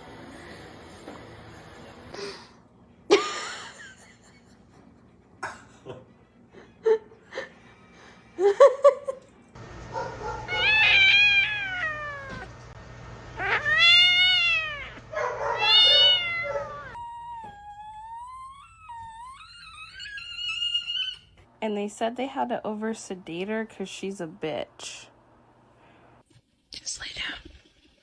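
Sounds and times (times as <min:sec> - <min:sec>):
cat yowling: 0:10.2 - 0:12.5, 0:13.4 - 0:21.3.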